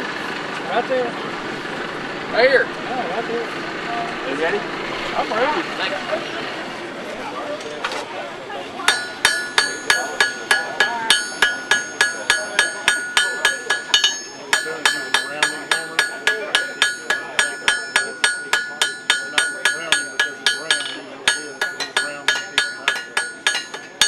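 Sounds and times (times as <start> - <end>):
hammer striking iron on anvil: 8.9 - 24.0.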